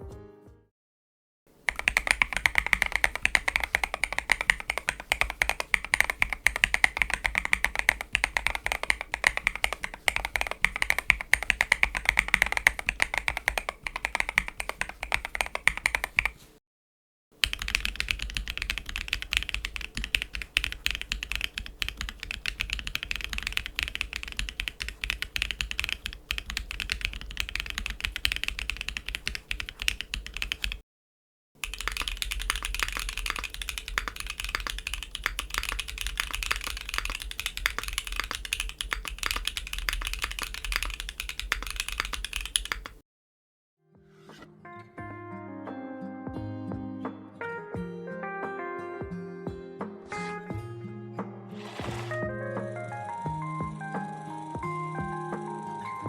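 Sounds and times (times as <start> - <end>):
brighter keyboard clacks: 1.6 - 16.5, 17.4 - 30.8, 31.6 - 43.0
mechanical keyboard typing: 1.6 - 16.5, 17.4 - 30.8, 31.6 - 43.0.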